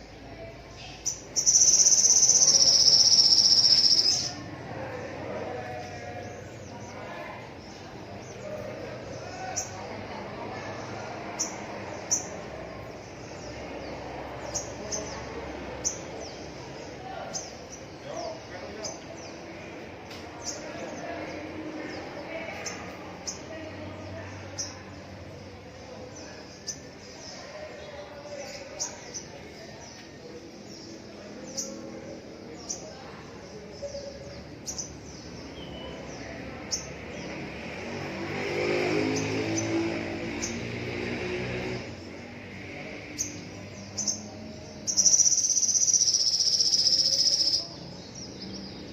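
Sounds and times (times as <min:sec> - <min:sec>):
small birds chirping: 0:00.0 - 0:48.9
small bird chirping: 0:00.7 - 0:04.4, 0:43.2 - 0:48.9.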